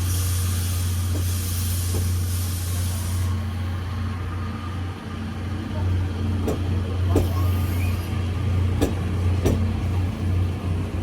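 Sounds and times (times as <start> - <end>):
loud train hiss: 0.0 - 4.1, 6.3 - 10.9
train low hum: 0.0 - 11.0.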